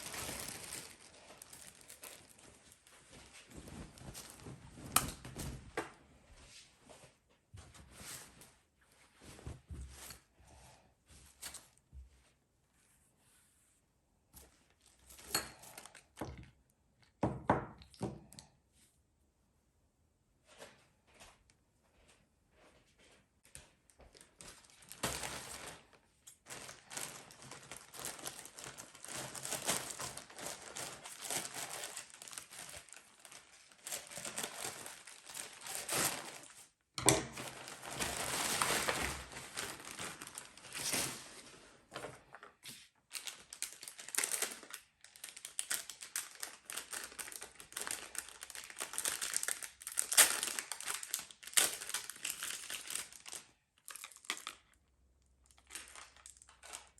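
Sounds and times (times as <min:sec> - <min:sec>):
packaging crinkling: 0:00.0 - 0:05.4, 0:24.0 - 0:36.7, 0:37.3 - 0:42.5, 0:43.1 - 0:54.8, 0:55.4 - 0:56.9.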